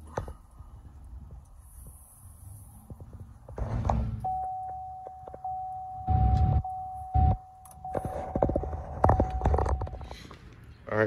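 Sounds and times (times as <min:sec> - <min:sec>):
high-pitched tone: 0:04.3 - 0:10.0.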